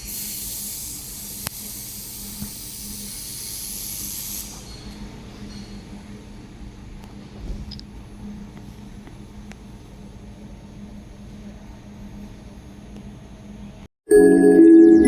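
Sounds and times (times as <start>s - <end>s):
laser welding machine hiss: 0.0s - 4.9s
faint machine hum: 4.5s - 13.9s.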